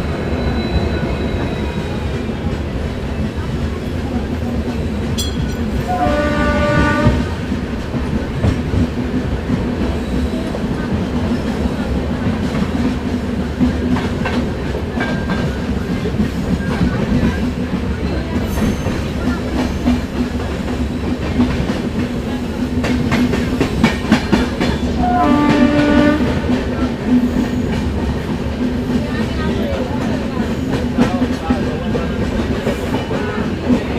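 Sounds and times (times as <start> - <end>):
train rumbling: 0.0 - 33.9
train horn blast: 5.9 - 7.5, 25.0 - 26.6.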